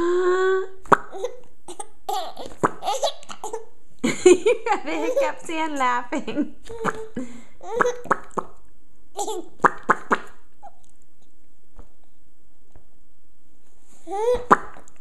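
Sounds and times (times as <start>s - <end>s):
child giggling with hiccups: 6.6s - 8.2s.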